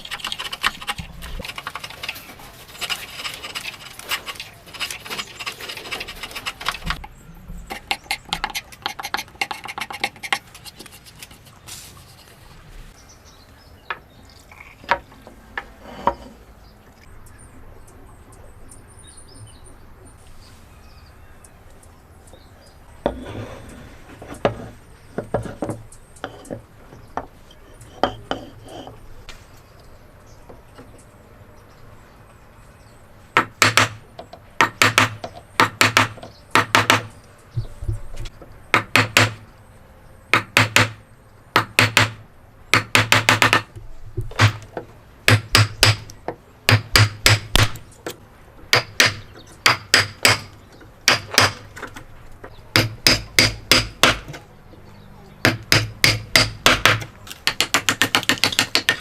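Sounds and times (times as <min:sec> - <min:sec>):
hammer striking wood chisel: 0:33.4 - 0:37.1, 0:38.7 - 0:39.4, 0:40.3 - 0:41.0, 0:41.6 - 0:43.7, 0:44.3 - 0:44.6, 0:45.3 - 0:46.1, 0:46.7 - 0:47.8, 0:48.7 - 0:51.9, 0:52.7 - 0:54.4, 0:55.4 - 0:59.0.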